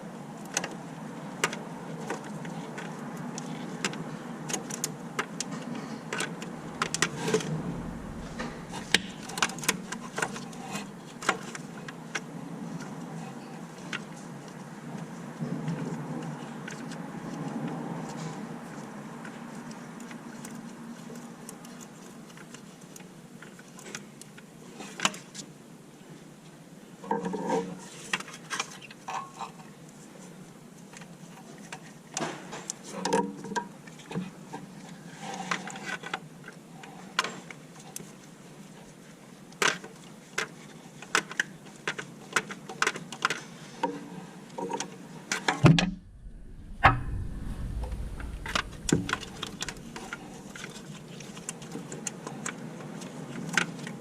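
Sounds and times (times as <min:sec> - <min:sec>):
low rumble and thump: 0:06.3 - 0:11.2, 0:45.6 - 0:50.7.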